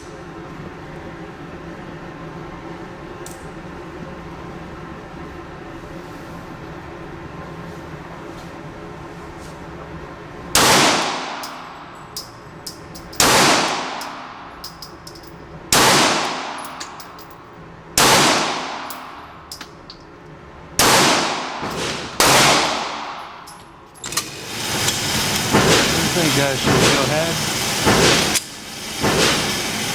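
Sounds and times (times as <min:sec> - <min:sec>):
pistol shots: 0:10.6 - 0:11.7, 0:13.2 - 0:14.3, 0:15.7 - 0:16.9, 0:18.0 - 0:19.2, 0:20.8 - 0:23.4, 0:25.4 - 0:28.4, 0:29.0 - 0:29.6
light metal clinks: 0:14.6 - 0:15.5.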